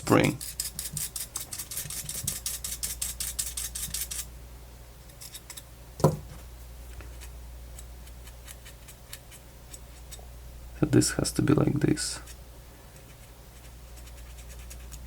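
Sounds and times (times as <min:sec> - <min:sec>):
single knock: 0:06.0 - 0:06.3
brush scrubbing: 0:13.0 - 0:15.0.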